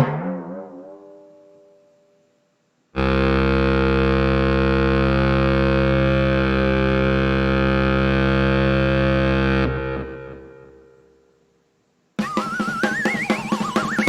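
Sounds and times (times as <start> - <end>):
cartoon low tone: 12.2 - 14.0.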